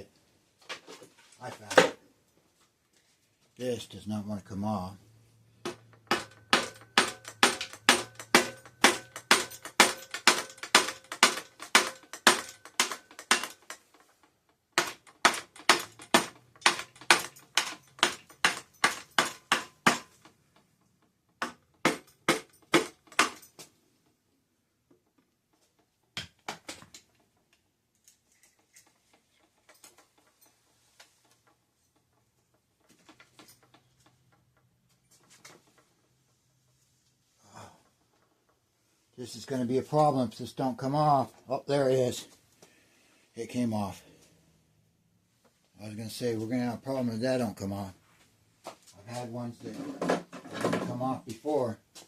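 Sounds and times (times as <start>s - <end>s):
rubber mallet hammering metal: 5.6s - 13.8s, 14.8s - 20.3s, 21.4s - 23.6s.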